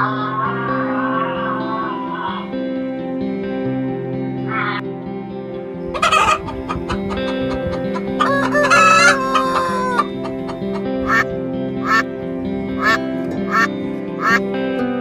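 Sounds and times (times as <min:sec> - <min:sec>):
background music: 0:00.0 - 0:15.0
rooster crowing: 0:06.0 - 0:11.2.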